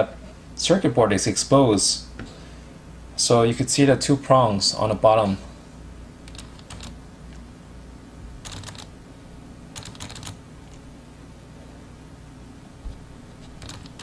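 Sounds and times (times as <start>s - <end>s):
plastic keyboard clicks: 13.6s - 14.0s.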